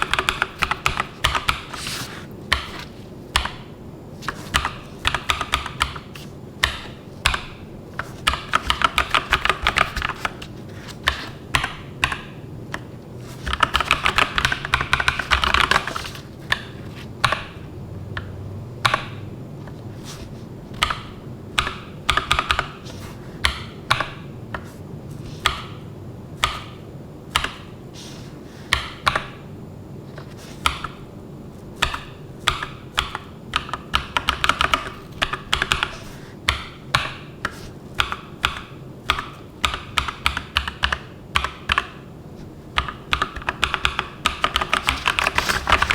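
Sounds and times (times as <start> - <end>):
mechanical keyboard typing: 0.0 - 19.3, 20.7 - 24.7, 31.8 - 37.3, 38.0 - 42.1, 42.7 - 45.9.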